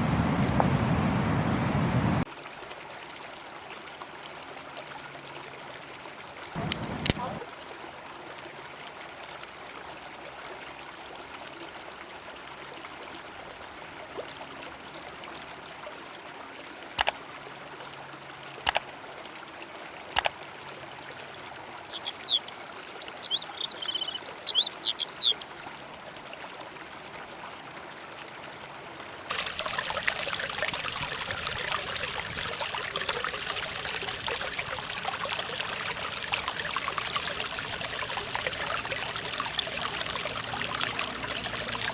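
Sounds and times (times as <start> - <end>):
river water running: 0.0 - 41.9
bird chirping: 21.9 - 25.7.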